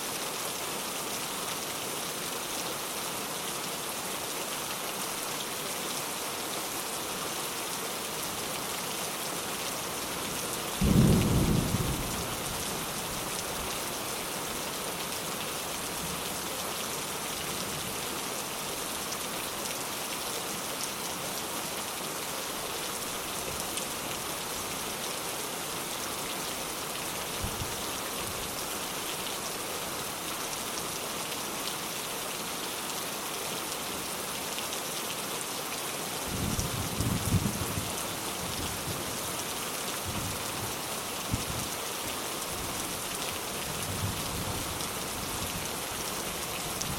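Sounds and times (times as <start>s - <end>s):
steady rain falling: 0.0s - 46.9s
low rumble of thunder: 10.8s - 12.6s.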